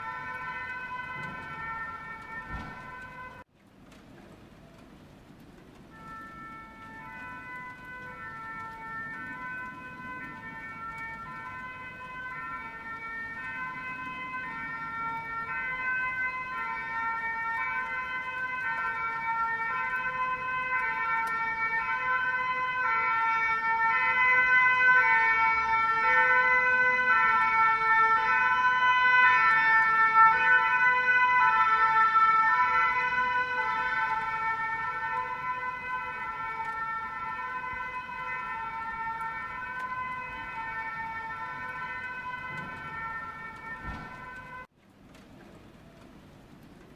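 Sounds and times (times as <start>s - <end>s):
two-tone emergency siren: 0.0s - 3.5s, 5.7s - 44.7s.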